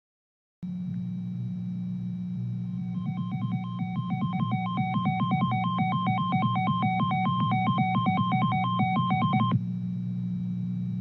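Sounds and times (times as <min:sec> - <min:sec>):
steady low hum: 0:00.6 - 0:11.0
two-tone electronic alert warble: 0:02.8 - 0:09.6.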